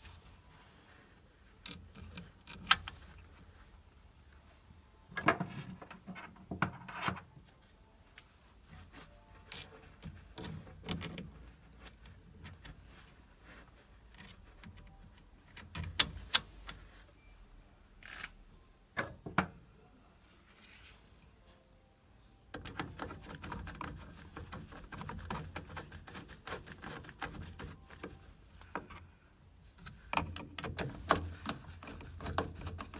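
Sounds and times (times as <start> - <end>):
tools and metal parts handled: 1.6 - 3.4, 8.8 - 13.1, 22.5 - 32.9.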